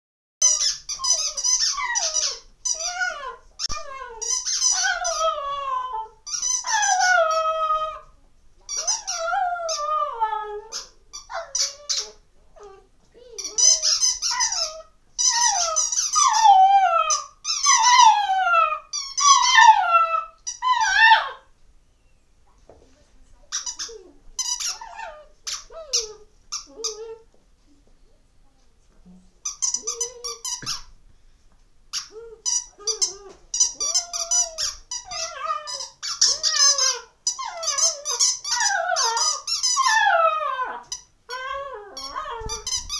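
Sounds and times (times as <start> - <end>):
squeaky toy squeaking: 0.4 - 5.4, 6.3 - 7.5, 8.7 - 10.0, 10.7 - 12.2, 13.3 - 21.1, 23.5 - 27.1, 29.4 - 30.9, 31.9 - 40.2, 40.9 - 42.9
dog whining: 0.4 - 8.1, 8.7 - 22.2, 23.5 - 27.3, 29.4 - 30.9, 31.9 - 42.9.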